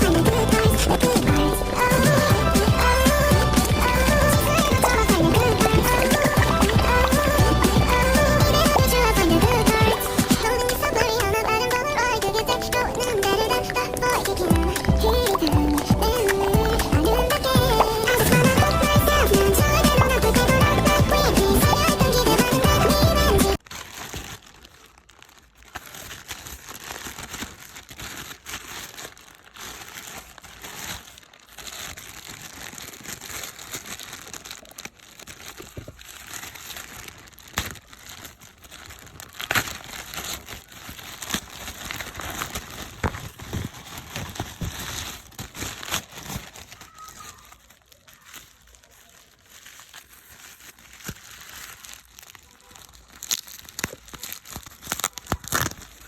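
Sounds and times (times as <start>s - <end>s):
packaging crinkling and rustling: 0.0s - 56.0s.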